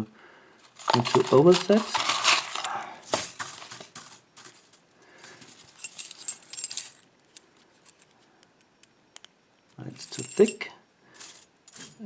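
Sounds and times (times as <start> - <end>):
lock picks clicking and scraping: 0.6 - 10.6
metallic jingle: 0.7 - 7.0, 9.9 - 12.0.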